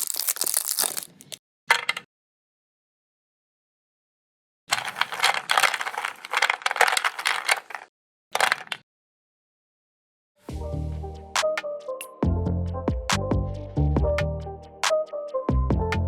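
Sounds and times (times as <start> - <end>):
meat grinder crushing candy: 0.0 - 1.4
music: 10.4 - 16.0.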